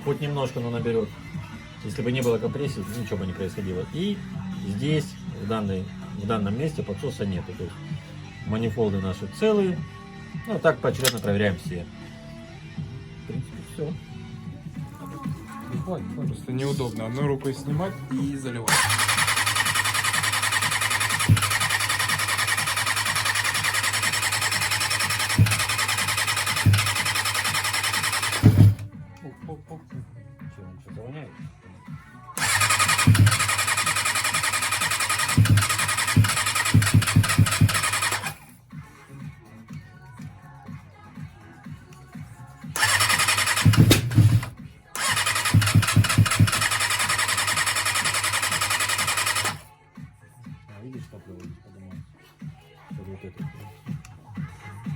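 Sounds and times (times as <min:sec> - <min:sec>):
motorcycle engine cranking: 0:11.0 - 0:11.4, 0:18.7 - 0:28.9, 0:32.4 - 0:38.5, 0:42.8 - 0:49.7
loud thumps: 0:18.7 - 0:28.9, 0:32.4 - 0:38.4, 0:42.8 - 0:47.0.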